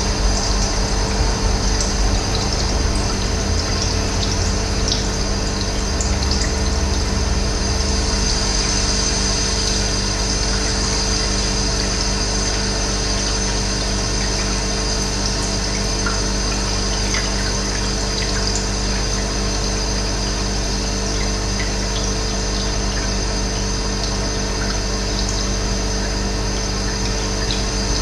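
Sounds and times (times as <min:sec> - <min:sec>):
water rushing: 0:00.0 - 0:11.9.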